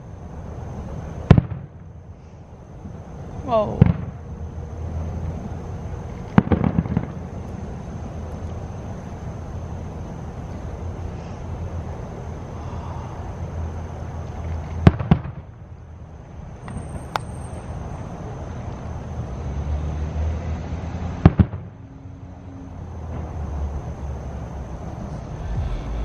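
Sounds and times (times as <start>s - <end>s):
faint fireworks pops: 1.3s - 1.8s, 6.1s - 7.6s, 14.3s - 15.5s
low rumble: 24.9s - 26.0s.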